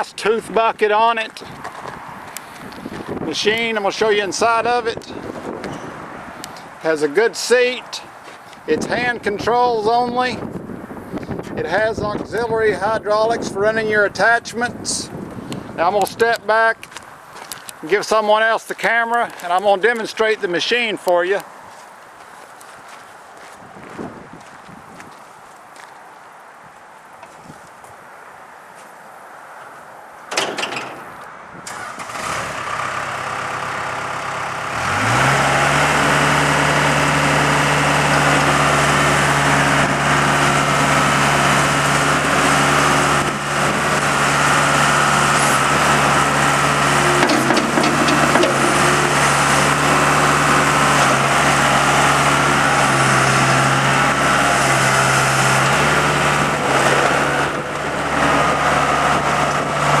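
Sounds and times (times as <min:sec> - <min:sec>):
diesel engine starting and running: 0:30.3 - 1:00.0.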